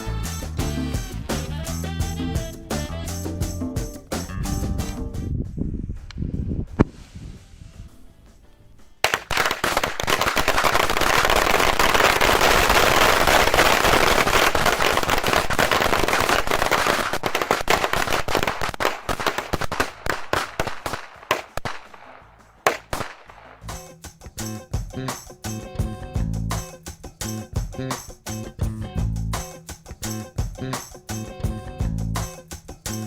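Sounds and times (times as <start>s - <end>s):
firecrackers crackling: 9.0s - 23.9s.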